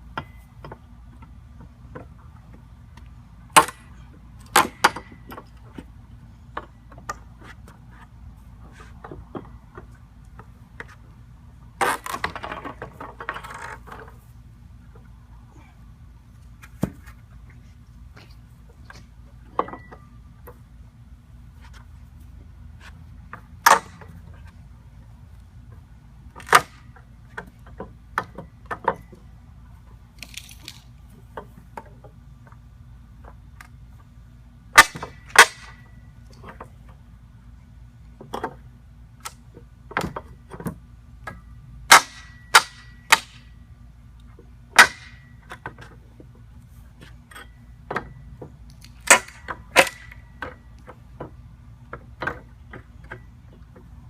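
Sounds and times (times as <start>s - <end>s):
steady low hum: 0.0s - 54.0s
pry bar cracking pallet boards: 3.5s - 5.5s, 23.6s - 24.1s, 26.4s - 29.0s, 34.8s - 35.8s, 41.9s - 43.5s, 44.8s - 46.0s, 48.8s - 53.3s.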